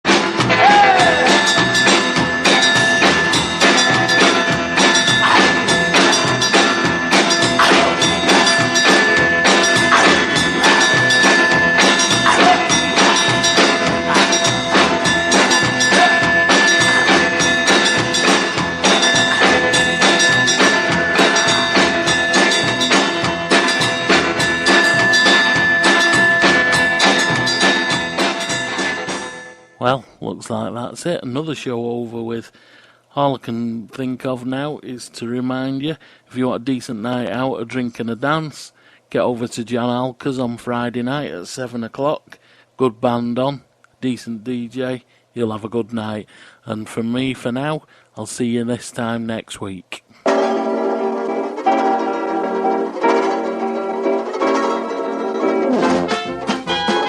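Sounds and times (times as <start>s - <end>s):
rock and roll music: 0.0s - 29.7s, 50.3s - 57.0s.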